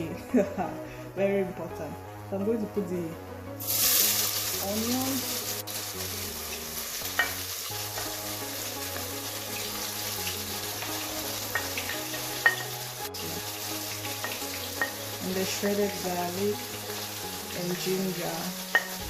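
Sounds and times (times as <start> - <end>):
onions sizzling in hot oil: 3.6 - 19.0
clinks against pot: 12.4 - 12.8.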